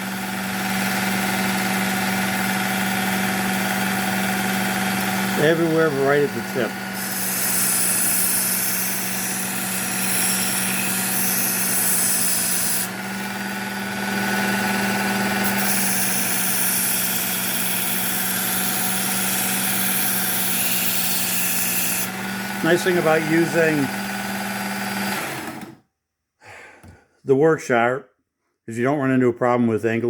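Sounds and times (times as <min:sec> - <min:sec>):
belt sharpener motor hum: 0:00.0 - 0:25.8
knife grinding on belt: 0:07.0 - 0:12.9.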